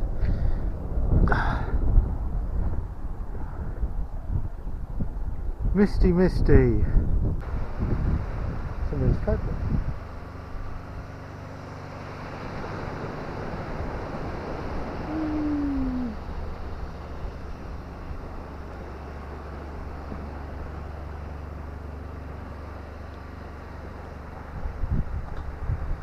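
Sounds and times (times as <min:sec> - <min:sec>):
wind rumbling on microphone: 0:00.0 - 0:20.8, 0:24.3 - 0:26.0
animal call sliding downward: 0:15.0 - 0:16.2.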